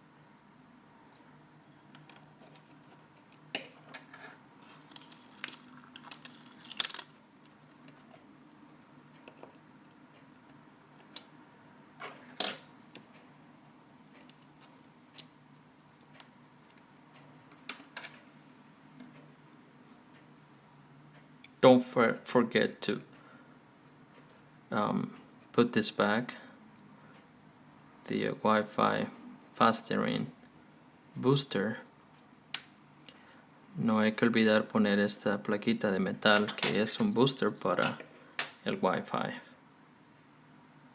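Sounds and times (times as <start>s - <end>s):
metal tools clicking and tapping: 36.4s - 38.5s.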